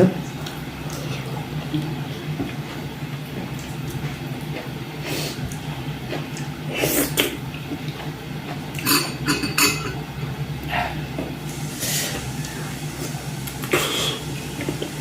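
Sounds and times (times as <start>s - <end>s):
steady low hum: 0.0s - 15.0s
plate and utensils clinking: 8.8s - 10.0s.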